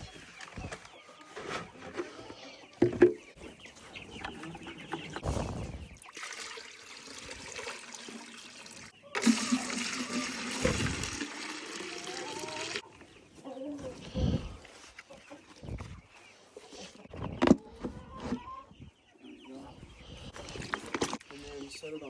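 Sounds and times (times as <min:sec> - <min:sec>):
chickens clucking: 0:00.0 - 0:06.1, 0:08.9 - 0:22.0
water pouring into a container: 0:06.0 - 0:12.8.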